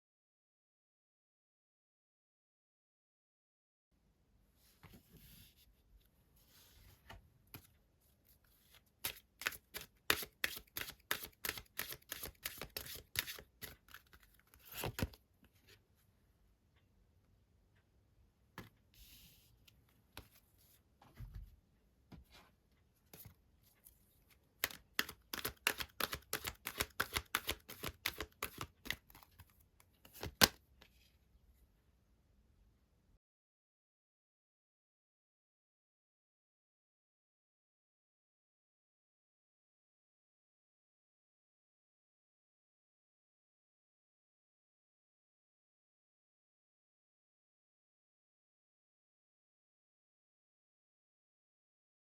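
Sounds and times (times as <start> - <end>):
cards being shuffled: 9.0 - 15.2, 24.6 - 30.6.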